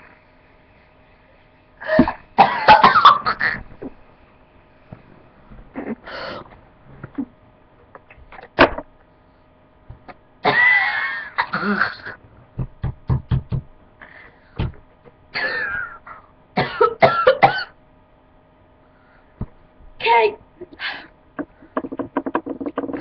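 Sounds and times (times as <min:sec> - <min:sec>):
person coughing: 0:01.8 - 0:03.6, 0:10.4 - 0:12.2, 0:15.4 - 0:16.0, 0:16.6 - 0:17.8.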